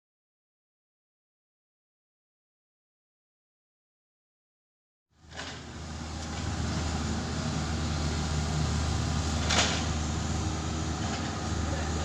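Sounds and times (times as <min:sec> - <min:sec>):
excavator diesel engine running: 0:05.2 - 0:12.0.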